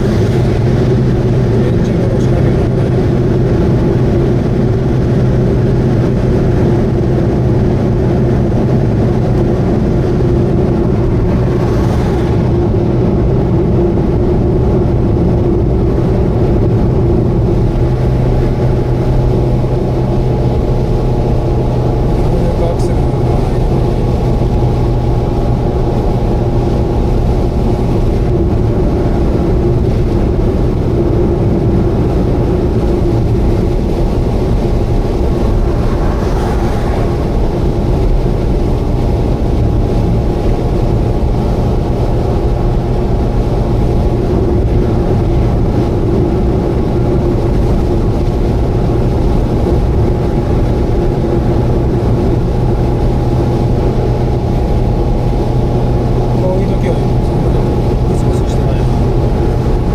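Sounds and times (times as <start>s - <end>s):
rushing noise: 0.0s - 15.4s, 30.4s - 59.9s
car engine drone: 0.0s - 59.9s
tyre and road rumble: 0.0s - 59.9s.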